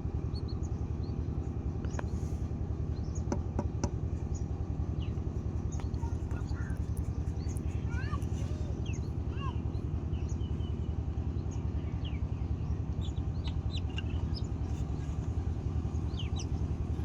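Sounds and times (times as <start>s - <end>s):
birds chirping: 4.3s - 17.0s.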